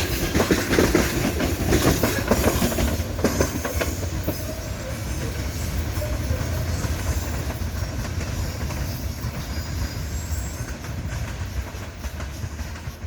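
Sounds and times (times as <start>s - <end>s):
steel wheels clattering over rail joints: 0.0s - 13.0s
train low rumble: 0.0s - 13.0s.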